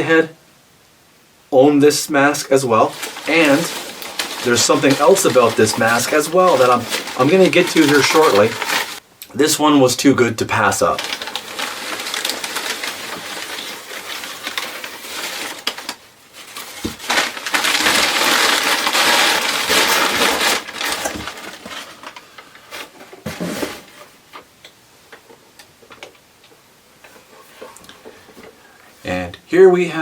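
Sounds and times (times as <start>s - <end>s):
packaging crinkling: 2.2s - 9.0s, 10.5s - 24.0s.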